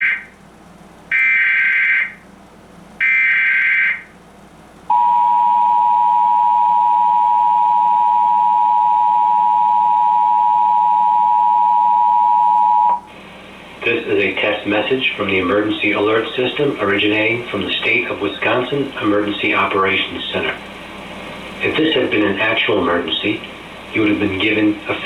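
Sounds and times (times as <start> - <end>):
two-tone attention signal: 4.9 - 13.0.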